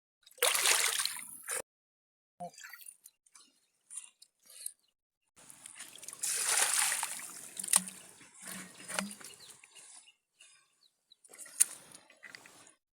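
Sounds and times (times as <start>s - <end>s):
water splashing and trickling: 0.2s - 1.6s, 5.4s - 9.9s.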